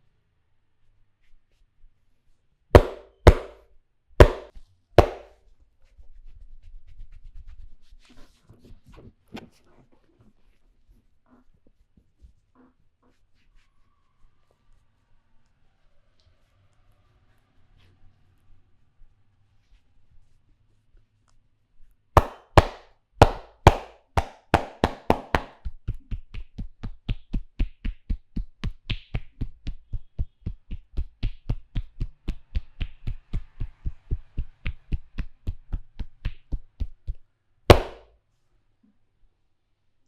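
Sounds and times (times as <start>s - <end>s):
hands slapping on a body: 2.8s - 3.6s, 4.2s - 5.3s, 22.2s - 30.0s, 30.7s - 33.4s, 34.9s - 36.9s, 37.7s - 38.1s.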